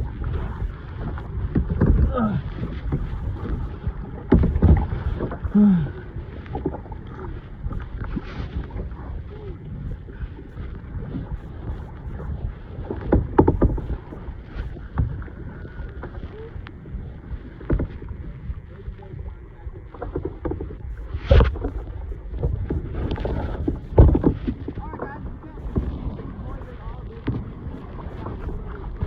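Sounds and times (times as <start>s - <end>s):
paddle knocks: 0.0s - 5.6s, 12.9s - 15.2s, 17.6s - 18.1s, 20.0s - 26.2s
paddle strokes splashing water: 0.0s - 29.0s
wind rumble on microphone: 0.0s - 29.0s.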